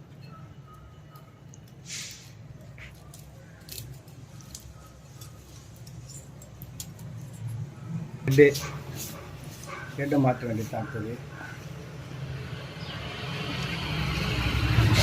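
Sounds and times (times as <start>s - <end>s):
metal engine parts clicking: 2.9s - 8.8s.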